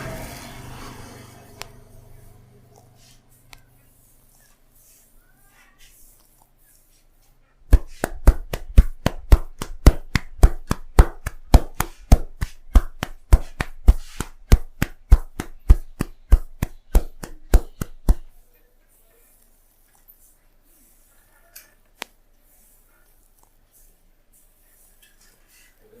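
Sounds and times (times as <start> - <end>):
hands slapping a head: 7.7 - 18.3.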